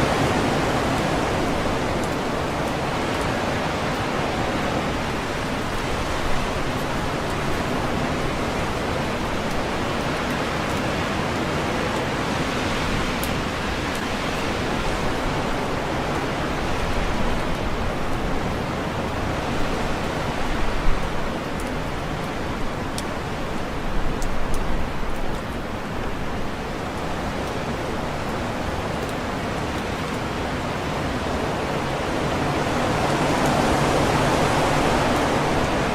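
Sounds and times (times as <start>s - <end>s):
strong wind through trees: 0.0s - 35.9s
leaves rustling: 26.1s - 35.9s.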